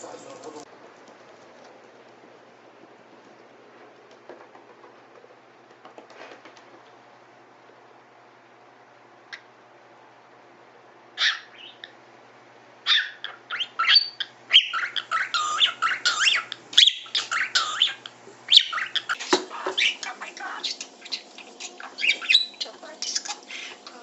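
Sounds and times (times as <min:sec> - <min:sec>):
parakeet chattering and whistling: 0:11.2 - 0:12.0, 0:12.8 - 0:24.0.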